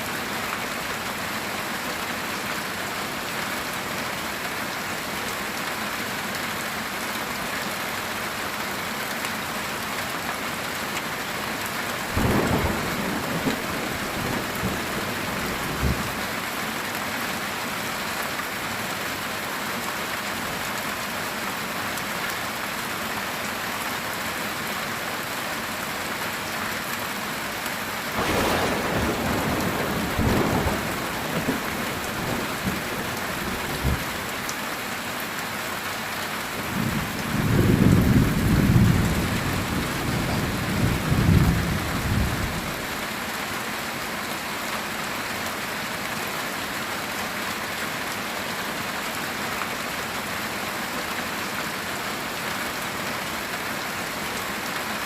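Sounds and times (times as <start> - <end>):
heavy rain on a tin roof: 0.0 - 55.0
thunder crack and rumble: 12.2 - 16.2, 28.2 - 34.2, 36.7 - 42.6.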